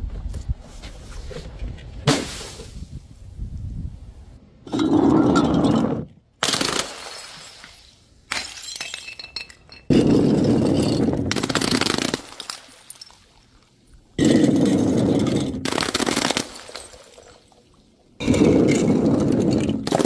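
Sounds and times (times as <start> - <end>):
glass bottles smashing: 8.3 - 13.3, 14.2 - 17.5.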